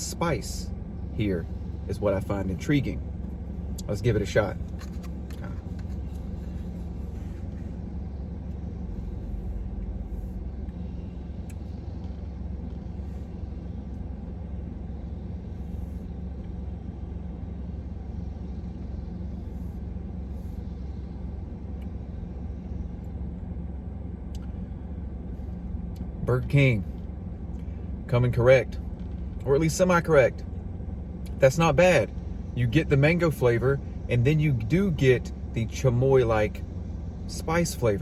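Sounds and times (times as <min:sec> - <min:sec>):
car engine idling: 0:00.0 - 0:38.0
faint hum: 0:00.0 - 0:38.0.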